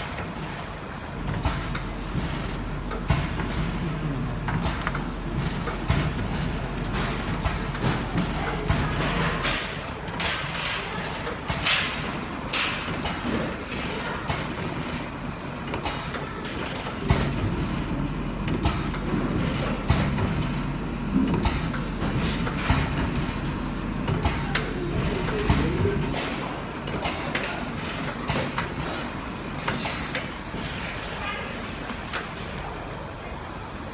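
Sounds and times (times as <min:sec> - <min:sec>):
machine hisses and clacks: 0:00.0 - 0:32.6
machine low hum: 0:01.0 - 0:09.4.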